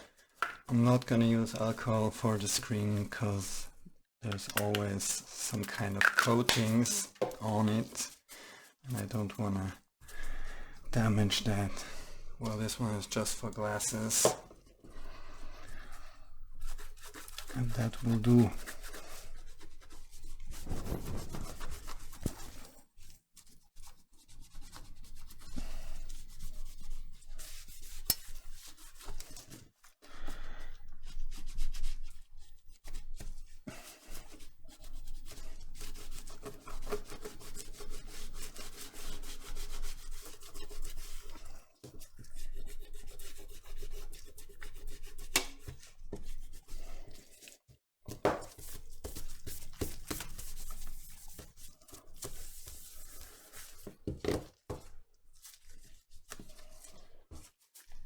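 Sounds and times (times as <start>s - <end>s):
wiping a glass phone screen: 16.5s - 22.7s.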